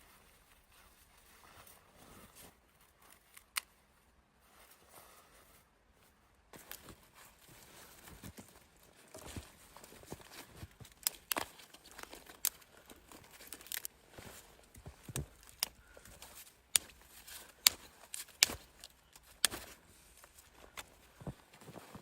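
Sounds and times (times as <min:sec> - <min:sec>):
sharp snaps and cracks: 0:03.2 - 0:03.8, 0:09.1 - 0:21.1.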